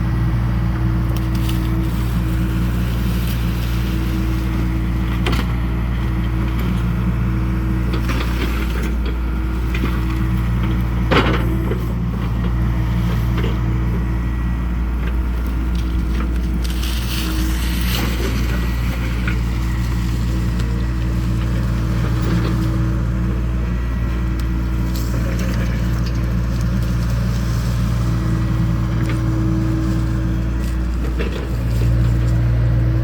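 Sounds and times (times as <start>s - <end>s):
excavator diesel engine running: 0.0s - 33.0s.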